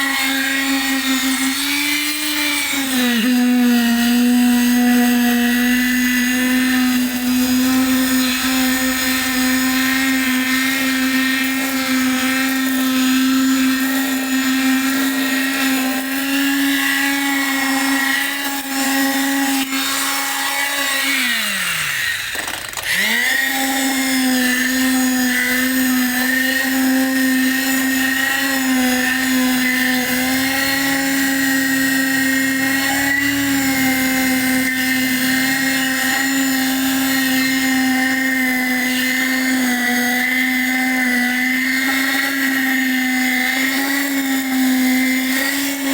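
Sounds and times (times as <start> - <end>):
vibrating machine motor humming: 21.4 - 38.2.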